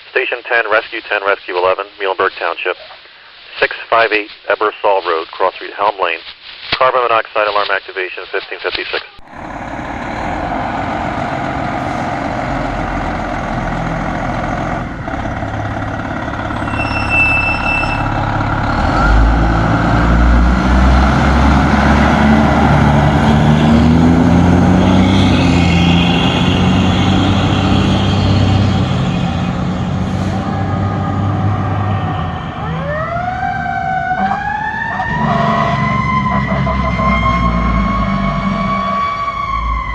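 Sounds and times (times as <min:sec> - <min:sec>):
diesel truck engine running: 0:09.2 - 0:39.9
short high beep: 0:16.5 - 0:19.3.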